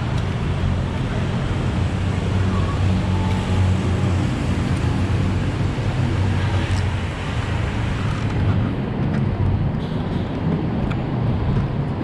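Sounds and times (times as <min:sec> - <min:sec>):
motorcycle engine running: 0:00.0 - 0:01.6
road and wind noise: 0:00.0 - 0:12.0.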